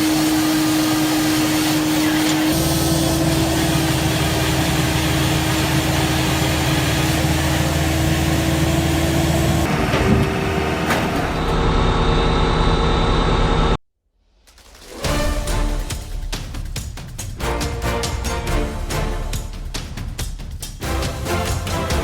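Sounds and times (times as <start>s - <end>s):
heavy machine engine running: 0.0s - 13.8s.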